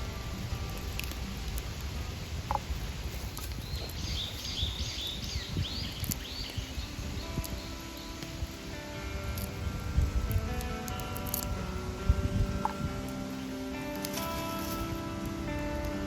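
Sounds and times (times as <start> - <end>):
songbird singing high clear notes: 3.6 - 8.6
faint clicks: 7.2 - 8.6.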